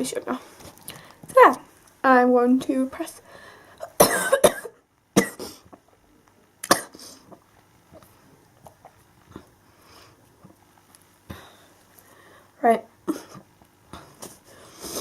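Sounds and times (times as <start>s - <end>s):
woman coughing: 3.8s - 5.5s, 6.7s - 7.0s, 13.0s - 13.4s.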